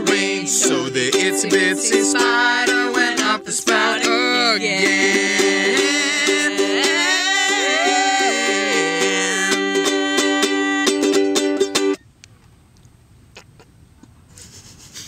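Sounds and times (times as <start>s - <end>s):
person singing long sliding notes: 0.0s - 11.7s
ukulele strumming: 0.0s - 12.0s.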